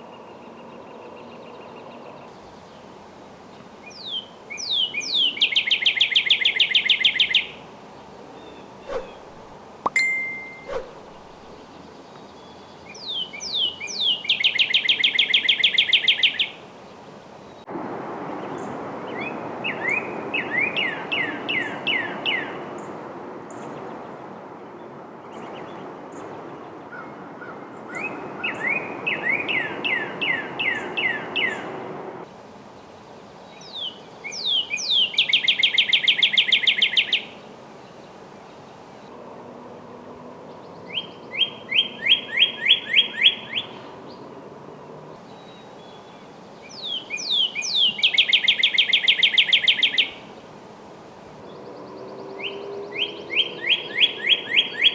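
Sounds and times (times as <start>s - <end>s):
bird singing whistles: 3.8s - 7.6s, 8.4s - 11.7s, 12.4s - 16.6s, 33.6s - 37.4s, 45.3s - 50.2s
steady rushing noise: 8.8s - 11.6s.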